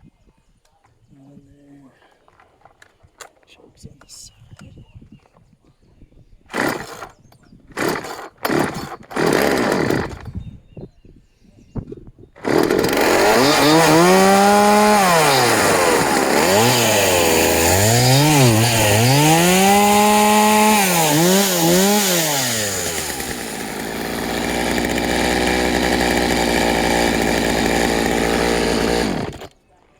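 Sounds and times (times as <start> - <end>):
chainsaw revving and idling: 6.5 - 7.2, 7.8 - 10.3, 12.4 - 29.6.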